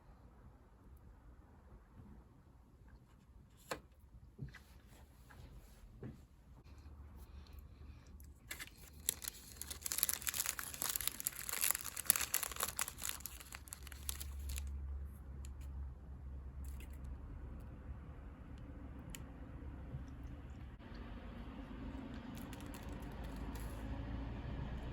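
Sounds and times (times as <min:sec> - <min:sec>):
packaging crinkling and tearing: 0:08.4 - 0:14.7, 0:22.2 - 0:23.8.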